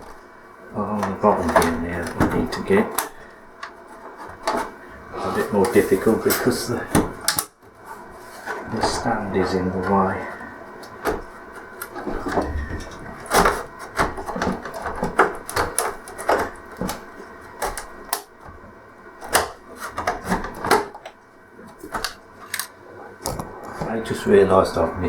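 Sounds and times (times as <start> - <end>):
plastic clicks and knocks: 10.8 - 18.6, 19.2 - 23.9.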